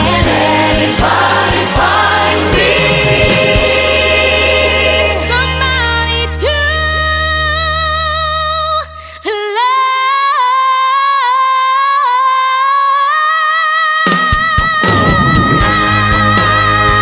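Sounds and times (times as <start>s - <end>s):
band playing: 0.0s - 6.3s, 14.7s - 17.0s.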